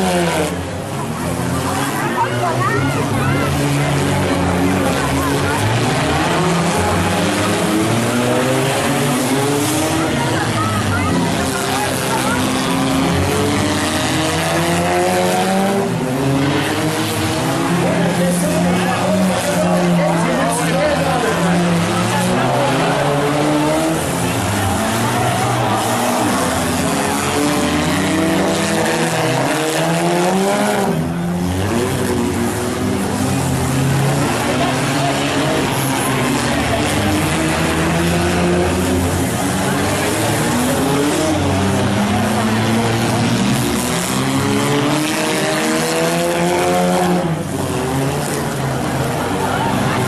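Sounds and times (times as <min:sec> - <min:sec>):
car engines running and revving: 0:00.0 - 0:50.0
loud dense background din: 0:00.0 - 0:50.0.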